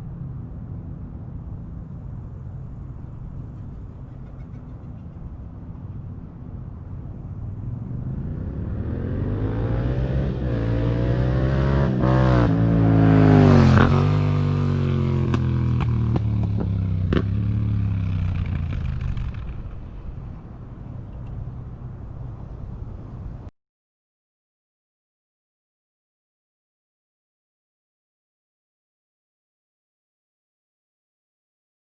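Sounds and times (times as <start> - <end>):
motorcycle accelerating past: 7.0 - 20.6
exhaust cracks: 13.4 - 21.4.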